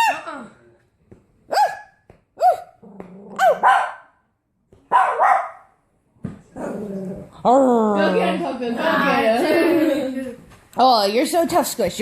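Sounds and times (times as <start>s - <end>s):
dog barking: 1.5s - 2.8s, 3.4s - 4.2s, 4.9s - 5.7s
dog growly barks: 2.4s - 4.0s.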